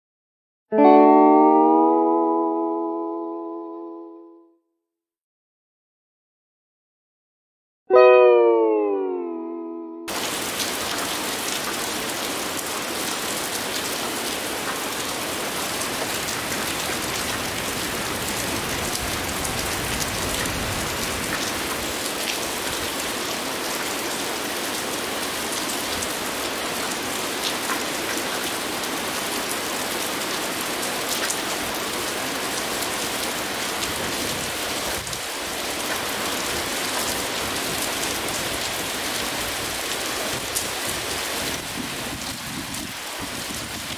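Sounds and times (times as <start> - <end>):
heavy rain falling: 10.1 - 43.9.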